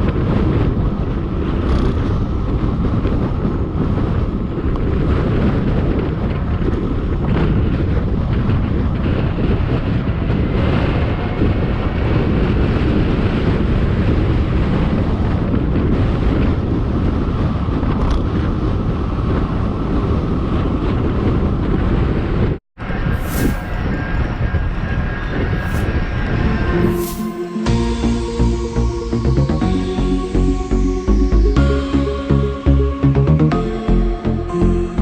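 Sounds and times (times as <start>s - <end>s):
wind buffeting microphone: 0.0s - 27.2s.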